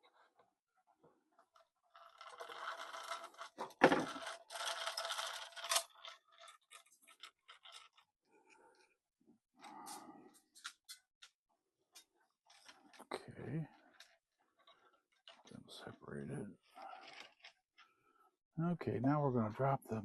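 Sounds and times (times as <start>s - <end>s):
clock parts scraping and rattling: 1.4s - 8.1s, 10.5s - 13.1s, 13.7s - 15.5s, 16.6s - 17.9s.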